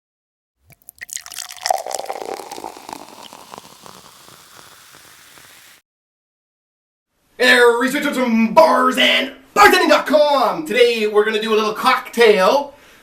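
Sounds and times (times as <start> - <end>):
liquid pouring into a glass: 0.7 - 5.8.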